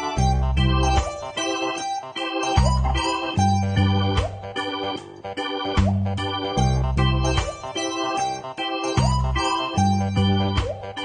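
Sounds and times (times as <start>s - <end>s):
upbeat organ-like keyboard tune: 0.0s - 11.0s
steady bass pulse: 0.2s - 1.2s, 2.6s - 7.8s, 9.0s - 11.0s.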